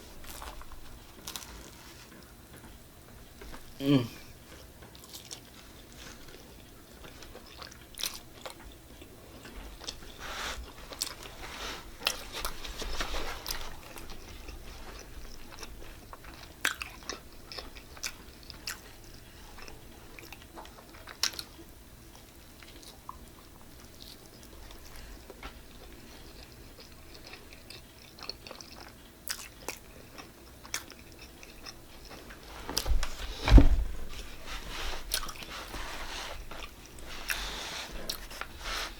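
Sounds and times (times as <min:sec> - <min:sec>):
person chewing pizza: 0:00.0 - 0:33.4, 0:34.2 - 0:38.9
crunchy crust clicks: 0:00.1 - 0:02.7
loud low thud: 0:33.4 - 0:34.0.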